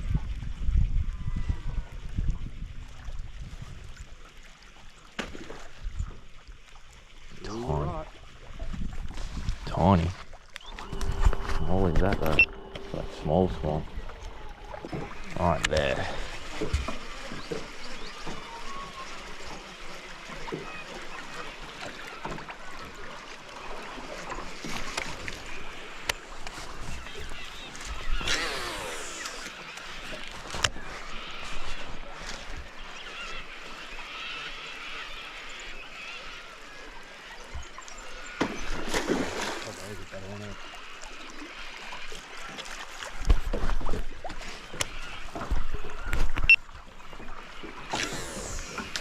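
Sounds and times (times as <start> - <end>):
water sloshing around boat: 2.0 - 49.0
knocks and thumps in a boat: 43.1 - 46.5.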